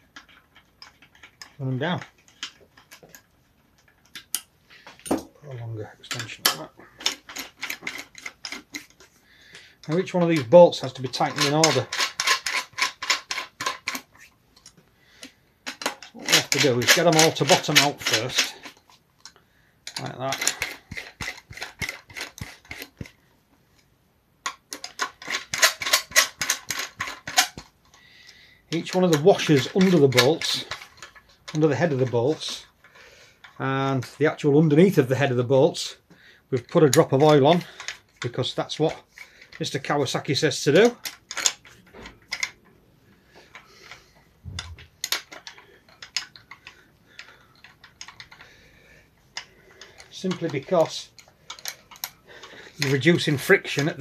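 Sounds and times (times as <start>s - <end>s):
metal tools clinking: 0.1s - 9.1s, 9.8s - 14.8s, 15.6s - 19.0s, 28.7s - 32.8s, 43.5s - 48.5s, 49.4s - 54.0s
hand ratchet clicking: 6.1s - 9.0s, 49.4s - 54.0s.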